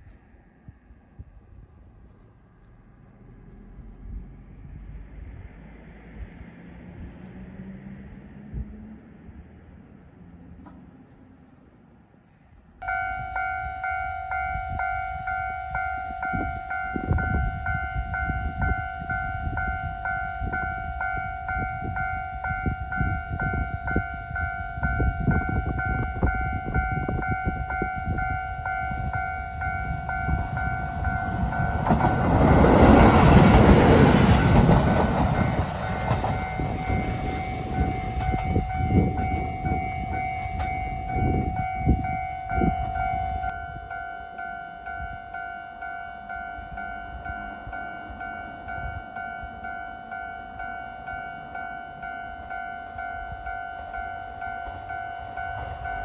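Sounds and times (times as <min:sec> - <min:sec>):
diesel train passing: 0:00.0 - 0:56.0
level crossing bell dinging: 0:12.8 - 0:32.6.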